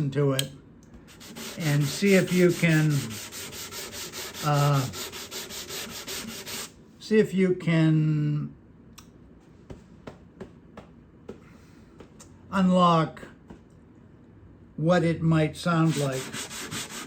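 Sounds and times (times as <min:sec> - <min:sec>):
sandpaper sanding wood: 0:01.1 - 0:06.7, 0:15.8 - 0:17.0.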